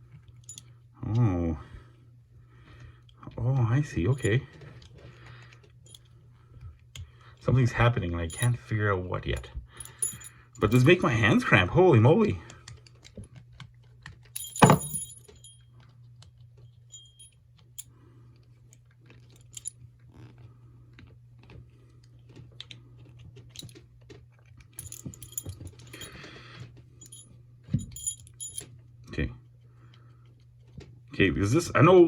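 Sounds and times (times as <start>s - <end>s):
faint low hum: 0.0s - 12.9s
metal puzzle clicking and clinking: 14.3s - 15.6s.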